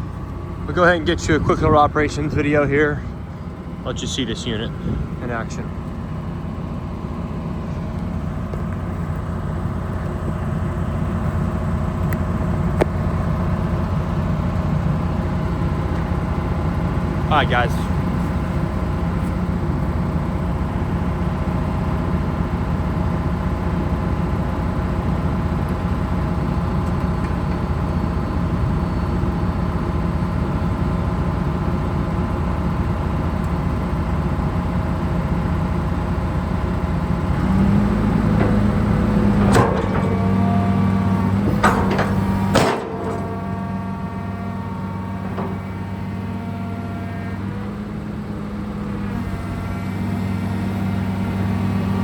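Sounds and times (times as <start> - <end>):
excavator diesel engine running: 0.0 - 52.0
metallic clanks of machine: 38.2 - 46.4.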